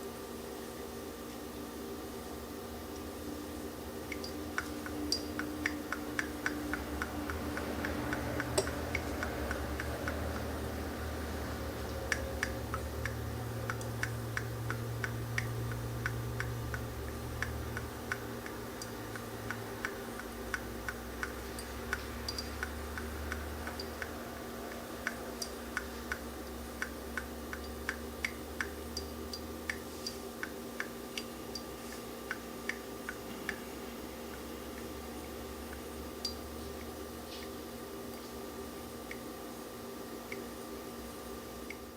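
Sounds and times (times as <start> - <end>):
steady low hum: 0.0 - 41.9
coffee dripping into a carafe: 4.0 - 31.7.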